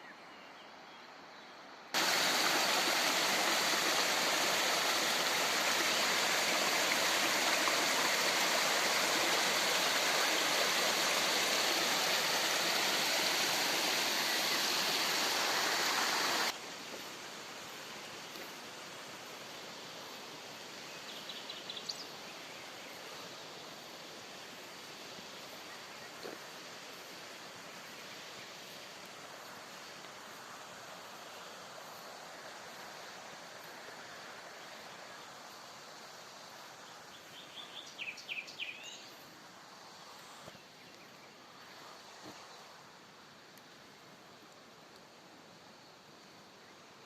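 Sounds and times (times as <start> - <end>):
outdoor background hiss: 0.0 - 47.0
flowing water rushing: 2.0 - 21.1.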